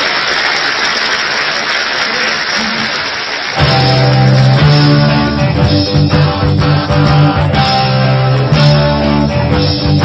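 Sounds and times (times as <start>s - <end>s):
crowd and stage noise: 0.0s - 10.0s
live rock band: 3.6s - 10.0s.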